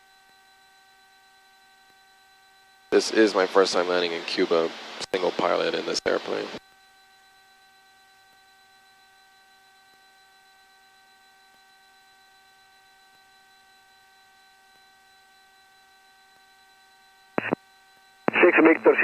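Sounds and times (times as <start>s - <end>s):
electrical hum in headset: 0.0s - 19.0s
radio noise burst: 17.4s - 17.6s, 18.3s - 19.0s.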